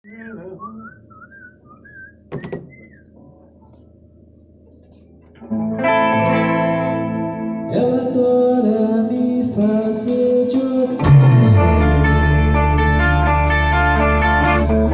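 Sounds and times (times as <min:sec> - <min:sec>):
knock: 0:02.3 - 0:02.8
guitar chords: 0:05.4 - 0:14.9
rock band playing: 0:10.1 - 0:14.9
high gliding notes: 0:11.0 - 0:14.9.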